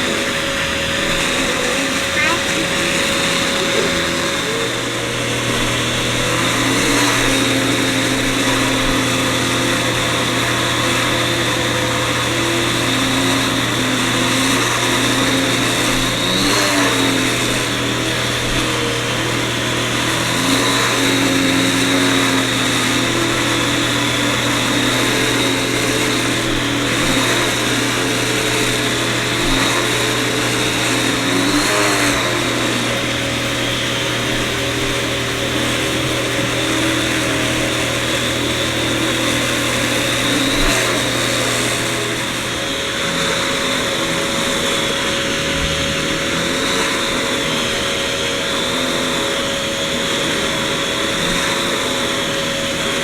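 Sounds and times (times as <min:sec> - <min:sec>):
vacuum cleaner running: 0:00.0 - 0:53.0.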